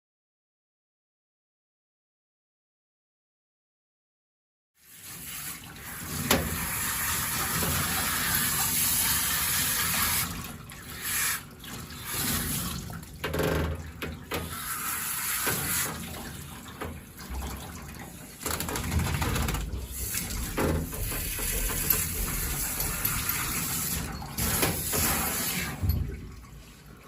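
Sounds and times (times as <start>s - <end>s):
shower sprayer hissing on fur: 4.8s - 12.7s, 14.4s - 16.0s, 19.9s - 25.9s.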